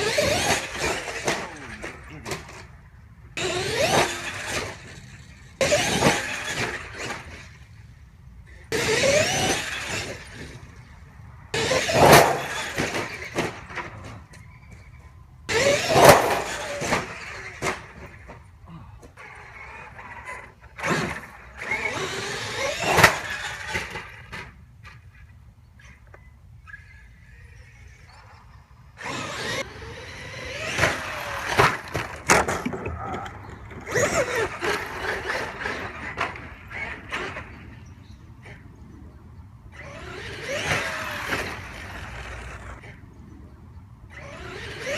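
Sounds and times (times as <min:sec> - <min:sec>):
rc truck motor whine: 0:00.0 - 0:43.2, 0:43.8 - 0:44.9
tyre noise: 0:11.6 - 0:24.5, 0:29.0 - 0:37.8.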